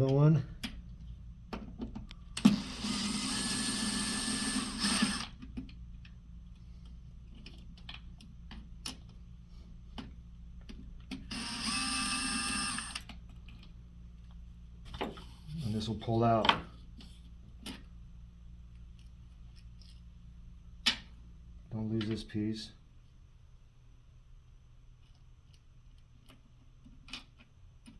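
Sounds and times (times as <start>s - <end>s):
tool whirring: 2.4s - 5.4s, 11.2s - 13.1s.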